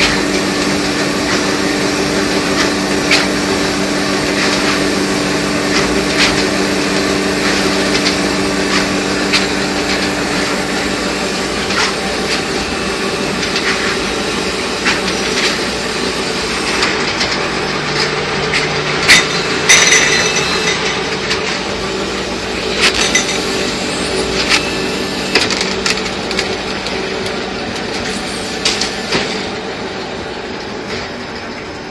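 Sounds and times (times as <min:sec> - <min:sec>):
machine motor hum: 0:00.0 - 0:31.9
machine clanks and knocks: 0:16.6 - 0:21.8.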